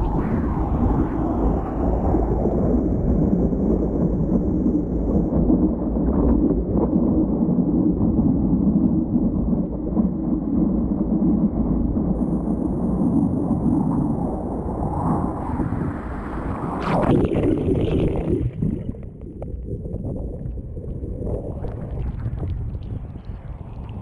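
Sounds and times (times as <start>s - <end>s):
heavy surf roaring: 0.0s - 5.3s, 12.2s - 17.1s
wind buffeting microphone: 0.0s - 24.0s.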